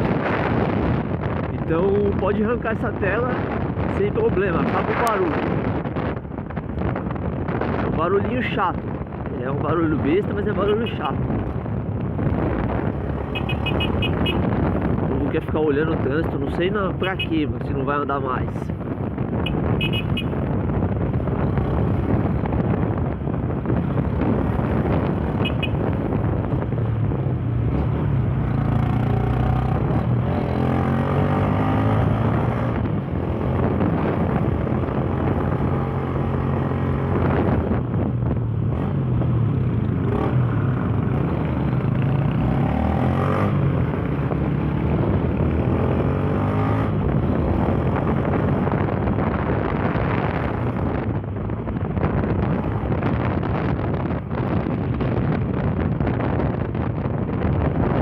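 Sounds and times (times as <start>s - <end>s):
wind on microphone: 0.0s - 58.0s
motorcycle engine revving: 12.2s - 15.1s, 27.6s - 37.8s, 38.6s - 51.0s.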